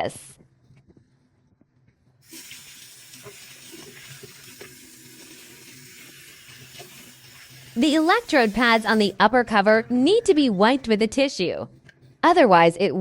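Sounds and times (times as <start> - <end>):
tap water running: 2.2 - 10.3.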